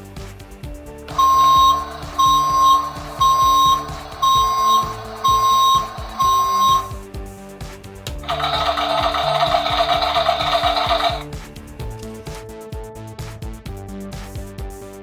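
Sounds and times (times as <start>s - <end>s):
high electronic beep: 1.1s - 7.0s, 8.2s - 11.2s.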